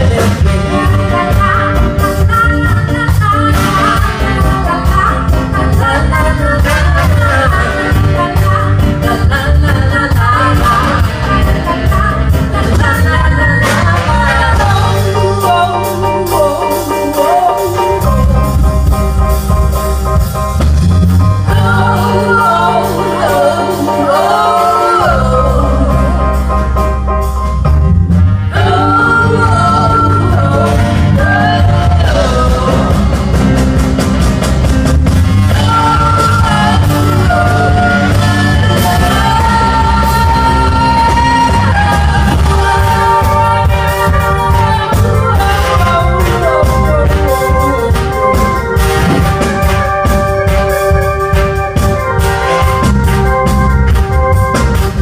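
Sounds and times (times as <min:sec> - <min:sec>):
person singing: 0:00.0 - 0:19.1, 0:28.5 - 0:33.6, 0:35.5 - 0:48.8
live rock band playing: 0:00.0 - 0:55.0.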